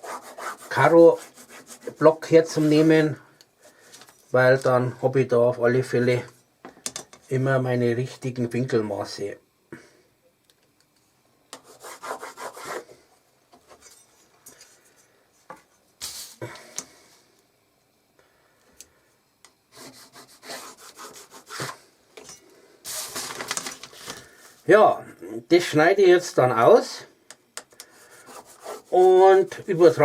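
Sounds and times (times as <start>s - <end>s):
pencil scratching on paper: 0.0s - 2.1s, 11.6s - 12.9s, 19.7s - 21.8s, 27.9s - 30.0s.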